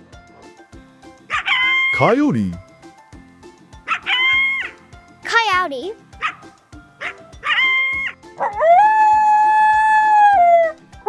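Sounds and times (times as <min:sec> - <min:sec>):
light background music: 0:00.0 - 0:11.0
coyote howling: 0:08.5 - 0:10.8.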